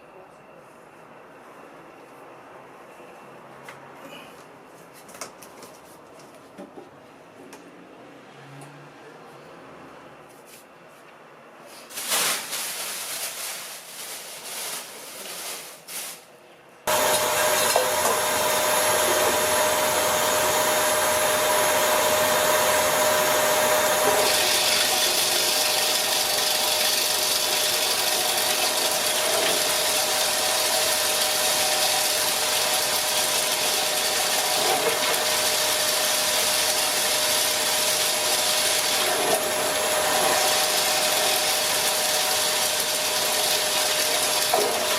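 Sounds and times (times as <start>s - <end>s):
machine humming: 16.9s - 44.9s.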